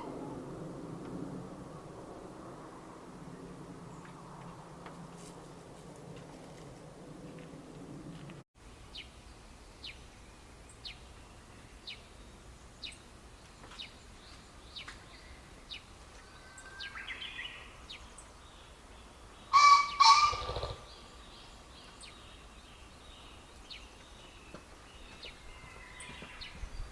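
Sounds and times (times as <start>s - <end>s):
wing drumming rumble: 0.0s - 8.4s
pheasant crowing: 19.5s - 20.9s.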